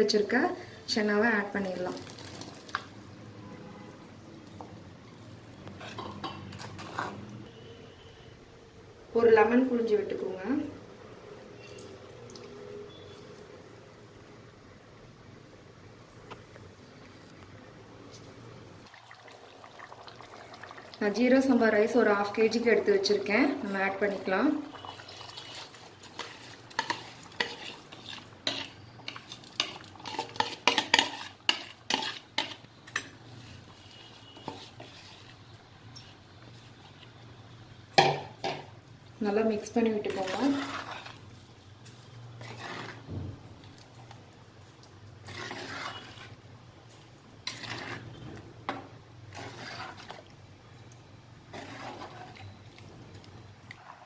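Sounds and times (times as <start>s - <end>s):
spoon scraping clay pot: 5.7s - 7.3s, 25.0s - 37.0s, 40.0s - 41.2s, 41.9s - 43.1s, 45.2s - 46.4s, 47.4s - 50.3s, 51.5s - 52.6s.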